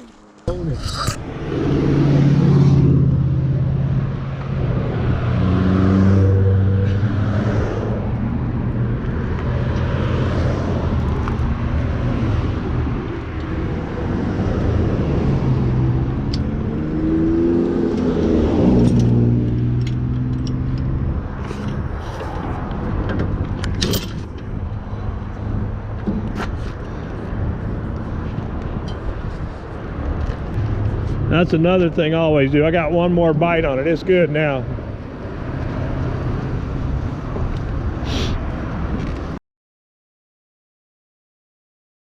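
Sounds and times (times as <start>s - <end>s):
vehicle engine revving: 1.2s - 23.9s.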